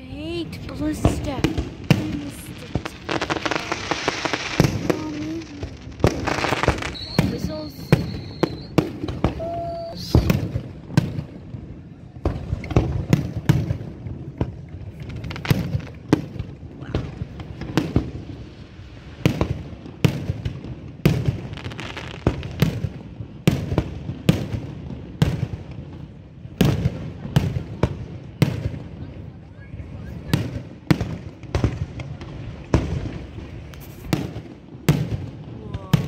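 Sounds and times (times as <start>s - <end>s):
fireworks cracks and booms: 0.0s - 36.0s.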